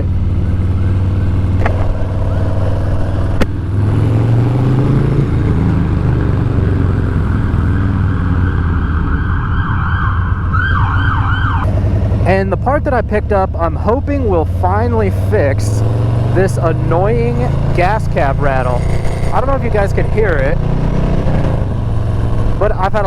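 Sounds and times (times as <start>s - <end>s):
motorcycle engine running: 0.0s - 9.0s, 10.6s - 23.0s
emergency siren yelping: 0.4s - 3.8s, 6.0s - 11.7s.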